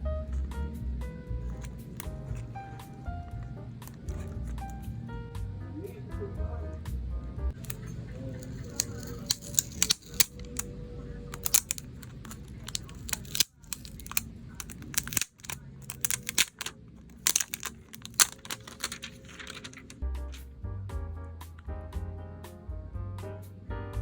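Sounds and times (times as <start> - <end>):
packaging crinkling and tearing: 7.6 - 10.7, 11.3 - 20.0
sharp clicks and taps: 11.4 - 20.0.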